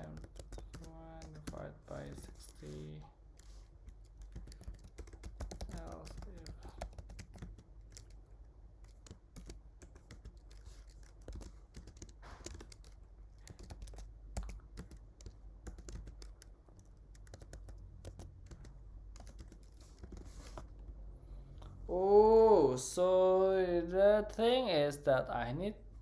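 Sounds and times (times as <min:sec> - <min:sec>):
keyboard typing: 0:00.0 - 0:21.0.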